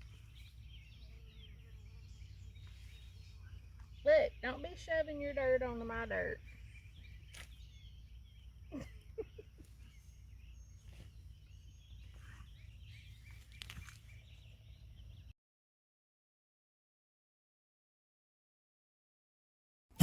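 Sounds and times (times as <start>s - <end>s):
faint bird chirps: 0.0s - 15.3s.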